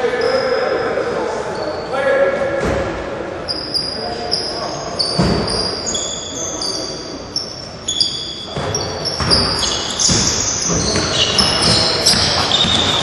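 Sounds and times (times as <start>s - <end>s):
sneakers squeaking on floor: 0.0s - 2.0s, 3.4s - 13.0s
ball bouncing: 8.5s - 13.0s.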